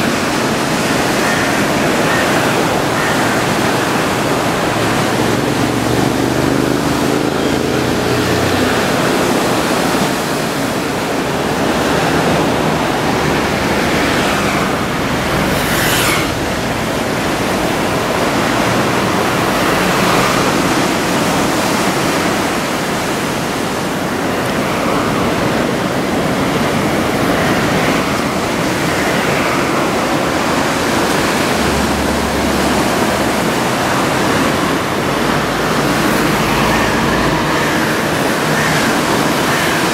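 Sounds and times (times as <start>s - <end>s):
heavy surf breaking waves: 0.0s - 39.9s.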